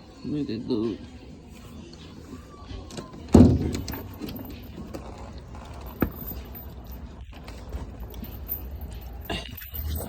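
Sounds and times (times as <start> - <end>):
heavy thump: 3.3 - 4.2.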